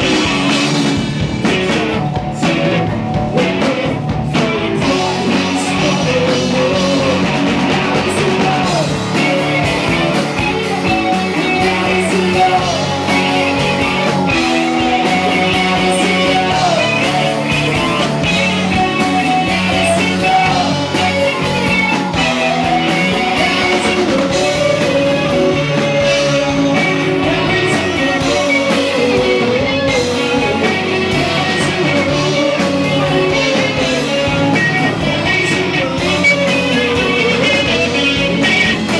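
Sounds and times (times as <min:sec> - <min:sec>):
drum kit: 0:00.0 - 0:38.9
electric guitar: 0:00.0 - 0:38.9
person singing: 0:00.0 - 0:38.9.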